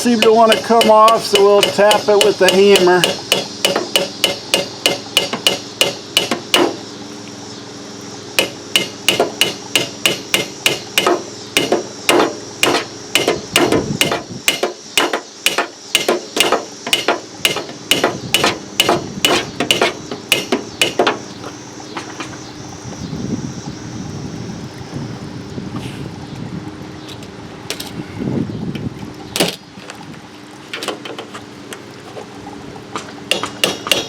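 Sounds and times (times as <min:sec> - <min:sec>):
hammer tapping metal arm: 0:00.0 - 0:06.8, 0:08.4 - 0:21.2, 0:33.3 - 0:34.0.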